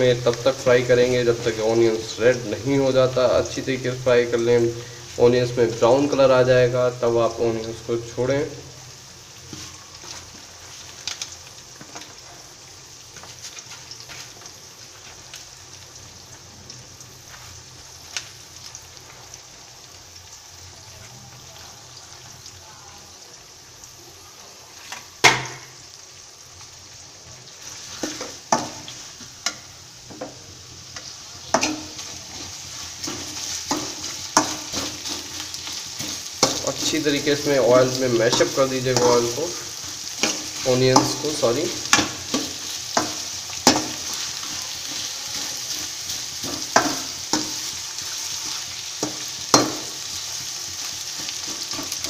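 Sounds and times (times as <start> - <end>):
onions sizzling in oil: 0.0 - 52.0
utensil clattering against pan: 31.5 - 32.0.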